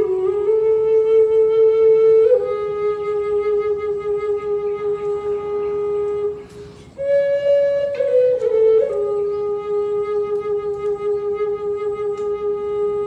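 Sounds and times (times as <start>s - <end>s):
flute playing: 0.0s - 13.0s
short breath: 6.4s - 7.0s.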